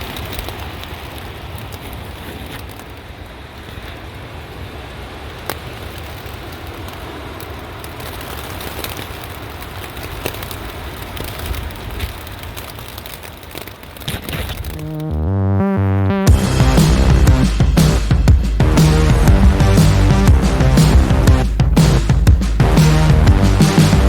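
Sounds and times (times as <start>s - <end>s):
rain pattering on fabric: 0.0s - 15.3s.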